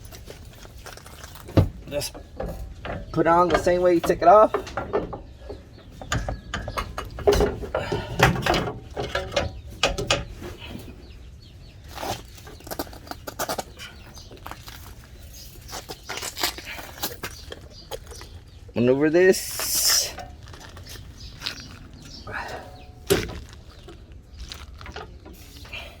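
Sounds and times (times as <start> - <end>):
metallic clicks and knocks: 0.1 - 10.4.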